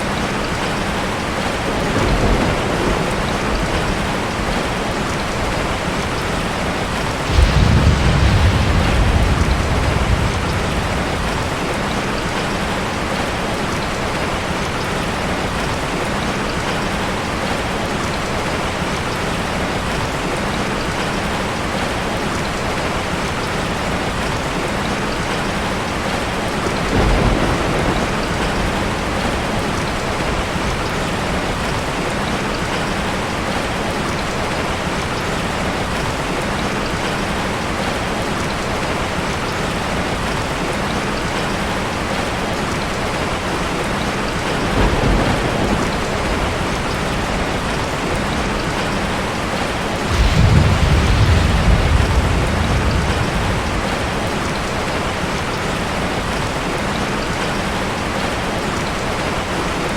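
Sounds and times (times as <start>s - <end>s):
thunder rumbling: 0.0s - 15.7s, 25.8s - 32.1s, 39.7s - 56.7s
steady rain: 0.0s - 59.9s.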